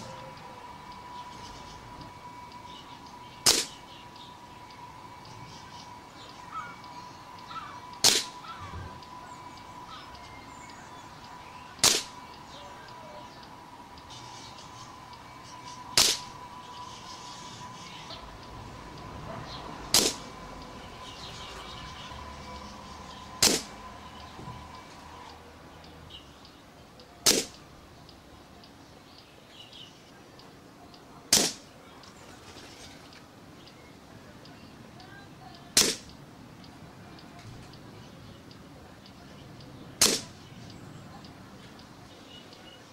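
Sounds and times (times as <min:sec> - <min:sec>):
birds chirping: 0:00.0 - 0:42.9
air rifle shots: 0:03.4 - 0:03.8, 0:08.0 - 0:08.4, 0:11.8 - 0:12.2, 0:16.0 - 0:16.3, 0:19.9 - 0:20.3, 0:23.4 - 0:23.7, 0:27.2 - 0:27.6, 0:31.3 - 0:31.7, 0:35.8 - 0:36.1, 0:40.0 - 0:40.4.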